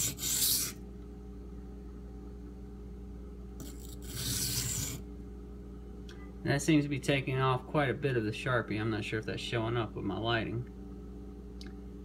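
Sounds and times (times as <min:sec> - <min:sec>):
blade scraping on whetstone: 0:00.0 - 0:00.8, 0:03.6 - 0:05.0.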